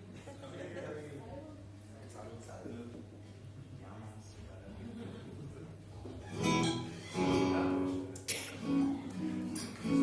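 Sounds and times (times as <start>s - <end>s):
acoustic guitar plucking: 6.3s - 10.0s.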